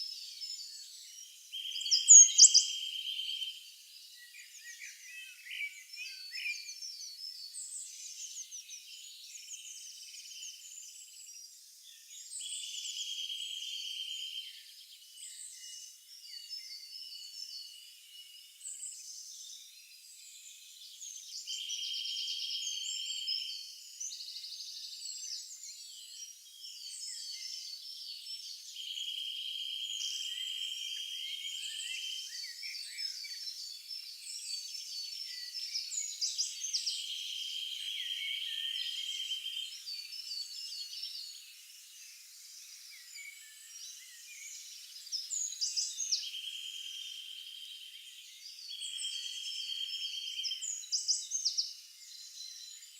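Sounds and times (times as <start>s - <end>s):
birds chirping: 1.6s - 2.7s.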